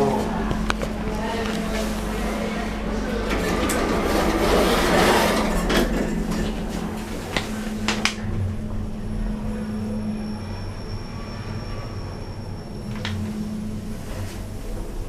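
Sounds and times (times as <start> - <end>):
lift doors sliding and clunking: 0.0 - 8.8
lift car humming: 0.0 - 15.0
faint high whine: 6.6 - 15.0.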